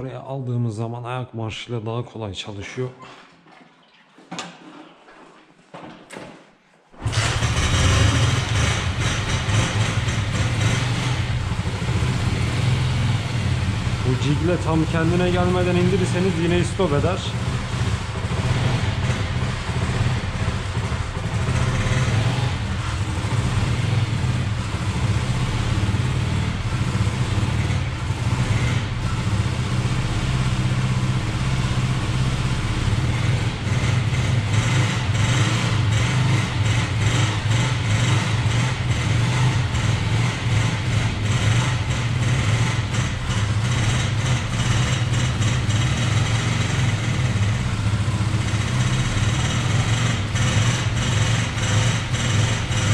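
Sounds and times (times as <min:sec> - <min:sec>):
motorcycle engine idling: 0:07.1 - 0:52.9.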